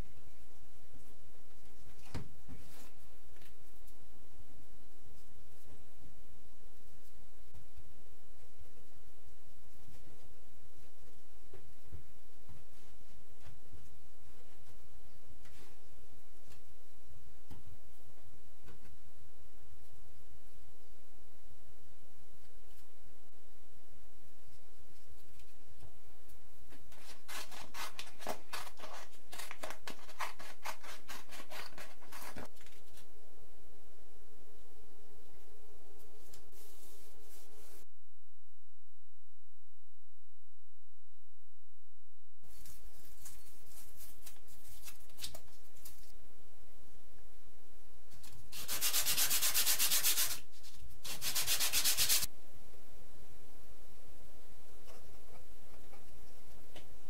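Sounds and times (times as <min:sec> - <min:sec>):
sandpaper rubbing wood: 0:48.5 - 0:52.3.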